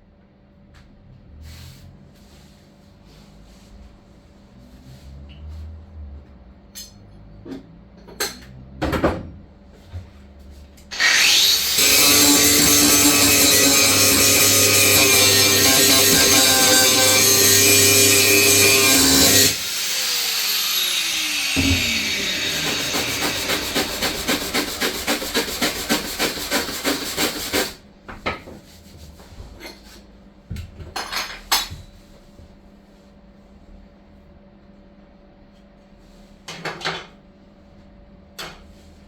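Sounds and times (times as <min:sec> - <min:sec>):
workshop knocks and clicks: 0:06.8 - 0:10.1, 0:21.6 - 0:23.6
power tool spinning down: 0:10.9 - 0:26.6.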